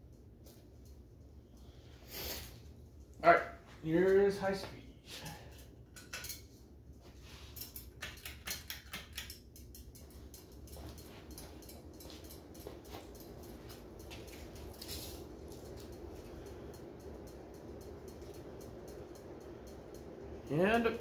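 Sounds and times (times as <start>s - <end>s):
ceiling fan air rumble: 0.0s - 21.0s
fan hum: 0.0s - 21.0s.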